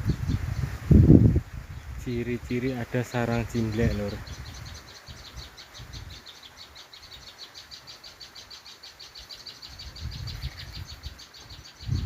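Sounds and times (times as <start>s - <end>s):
bird calling rapid high chirps: 3.6s - 12.0s.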